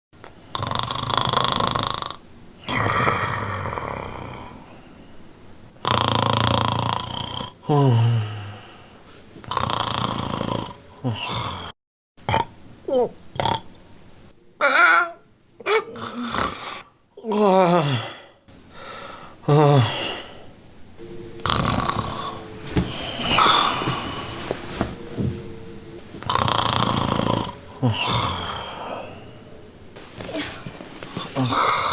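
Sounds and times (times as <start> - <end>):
man snoring: 0.5 - 4.9, 5.8 - 11.8, 15.9 - 20.5, 21.4 - 25.4, 26.2 - 31.9.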